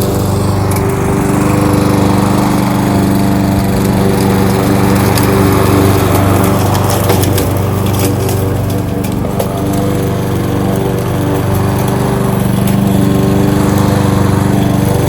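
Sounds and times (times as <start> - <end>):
lawnmower engine running: 0.0 - 15.0.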